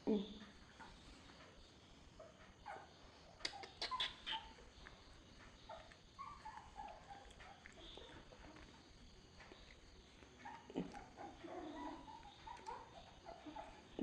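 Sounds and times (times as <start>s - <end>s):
puppy whimpering: 5.6s - 8.8s, 10.4s - 14.0s.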